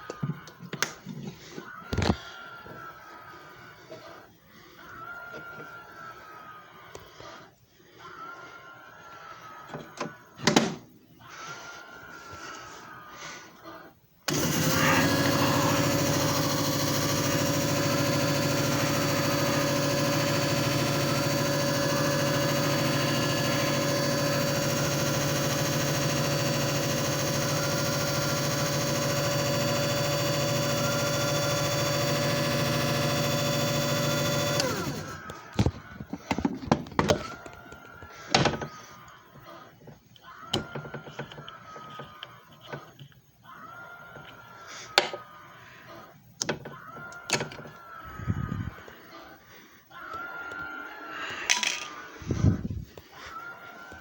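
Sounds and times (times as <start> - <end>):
machine motor spinning with whine: 14.3 - 36.3.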